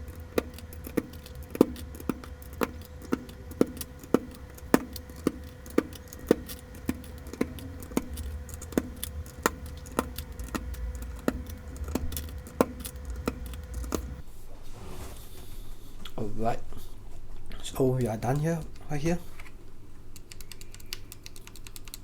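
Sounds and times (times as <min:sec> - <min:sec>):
sharp plastic clicks: 0:00.0 - 0:14.2, 0:20.1 - 0:22.0
steady low hum: 0:00.0 - 0:14.4.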